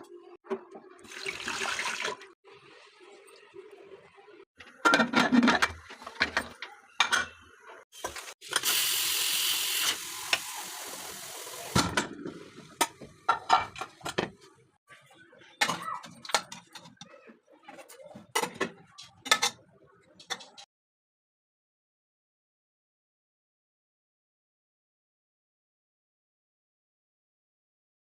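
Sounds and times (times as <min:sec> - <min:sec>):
cookware clattering and knocking: 0:04.7 - 0:07.4, 0:11.7 - 0:14.5, 0:15.5 - 0:20.7.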